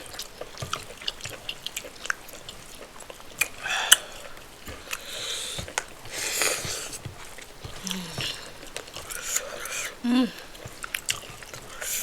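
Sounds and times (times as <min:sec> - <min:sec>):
wet mouth clicks and smacks: 0:00.0 - 0:06.9
person chewing food: 0:00.0 - 0:12.0.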